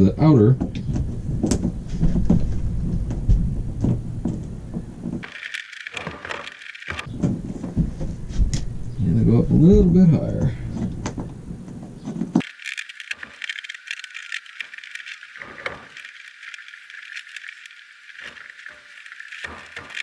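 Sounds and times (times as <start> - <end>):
small parts clicking and rattling: 5.2 - 7.1, 12.4 - 20.0.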